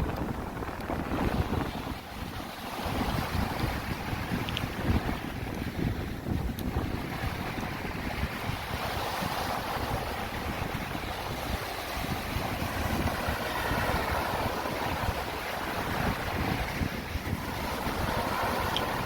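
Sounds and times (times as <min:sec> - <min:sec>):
sea waves washing in: 0:00.0 - 0:19.0
wind buffeting microphone: 0:00.0 - 0:19.0.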